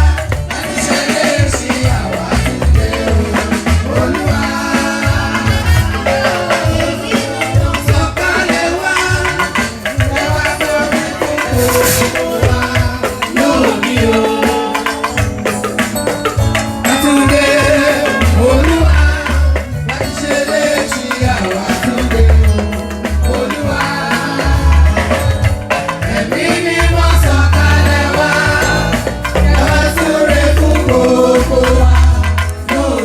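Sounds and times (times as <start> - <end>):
heavy bass: 0.0 - 0.5, 1.8 - 4.3, 18.2 - 19.9, 22.0 - 23.3, 26.8 - 33.0
drums: 0.0 - 33.0
voices singing: 0.0 - 33.0.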